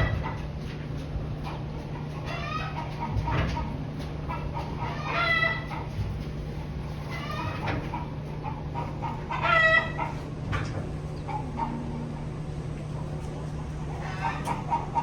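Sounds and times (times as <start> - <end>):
steady low hum: 0.0 - 15.0
chicken squawking: 2.1 - 3.7, 4.3 - 5.9, 7.0 - 10.3, 13.9 - 15.0.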